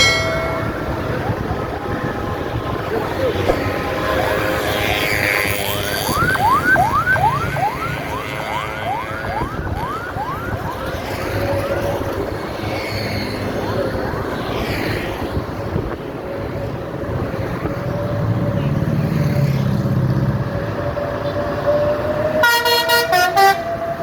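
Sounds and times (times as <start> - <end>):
engine and road noise: 0.0 - 24.0
bus horn rising whoops: 22.4 - 23.8.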